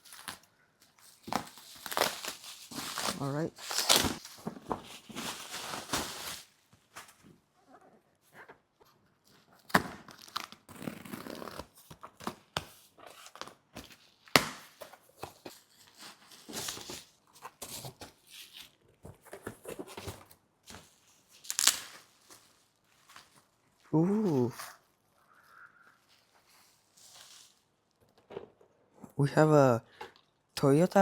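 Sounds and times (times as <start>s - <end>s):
packaging tearing and crinkling: 0.0s - 6.5s, 9.6s - 12.5s, 19.7s - 22.6s.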